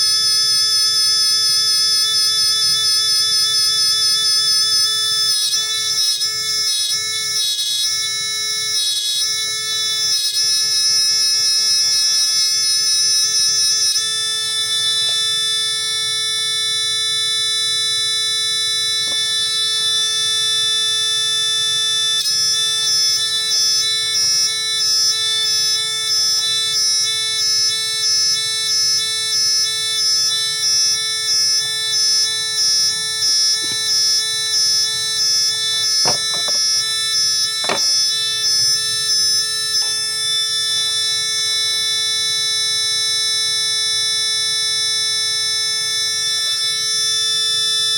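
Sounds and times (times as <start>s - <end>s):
electronic buzzer tone and warble: 9.3s - 22.8s, 27.4s - 42.8s.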